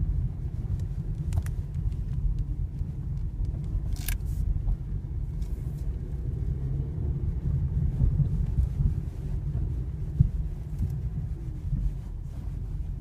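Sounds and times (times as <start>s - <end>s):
car rumbling over uneven road: 0.0s - 13.0s
suspension crunching creak: 3.2s - 4.3s.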